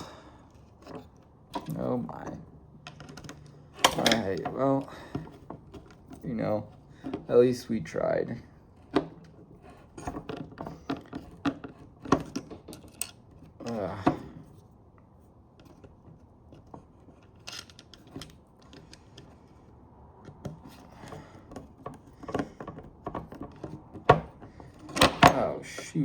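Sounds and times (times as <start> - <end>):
clicks and knocks of handled parts: 0.0 - 7.6, 8.3 - 14.7, 15.5 - 25.9.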